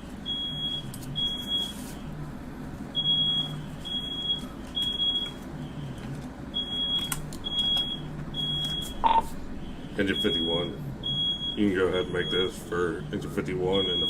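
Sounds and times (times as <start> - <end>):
smoke alarm beeping: 0.2 - 2.1, 3.0 - 14.0.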